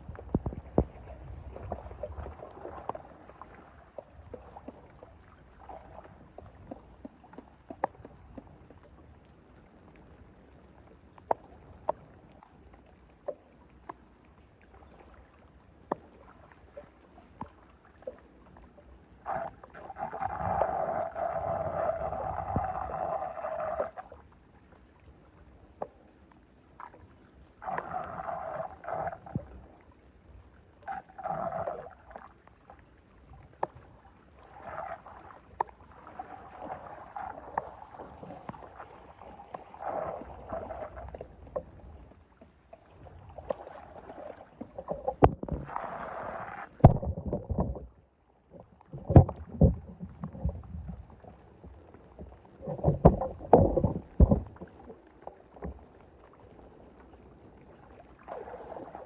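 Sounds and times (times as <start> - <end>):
water splashing and sloshing: 0.0 - 59.0.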